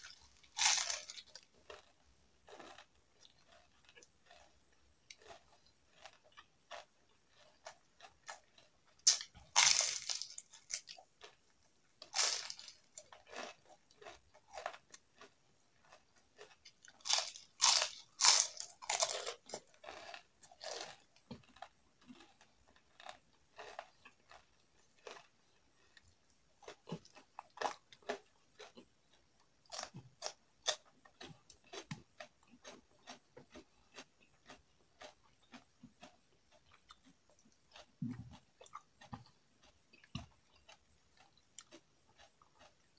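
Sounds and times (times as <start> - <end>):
crunchy chewing: 0.0 - 42.9
chewing clicks: 15.9 - 42.9.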